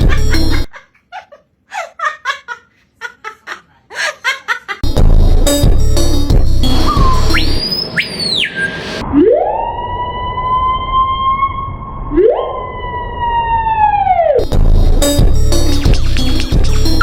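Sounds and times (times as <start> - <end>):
siren wailing: 6.6 - 14.4.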